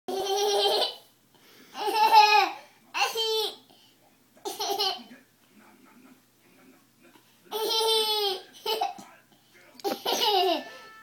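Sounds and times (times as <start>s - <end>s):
young child laughing: 9.8s - 10.6s.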